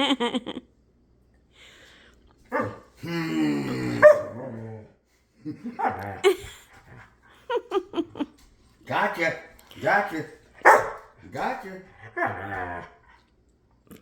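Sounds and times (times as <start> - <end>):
dog barking: 2.5 - 2.9, 4.0 - 4.4, 10.6 - 11.1.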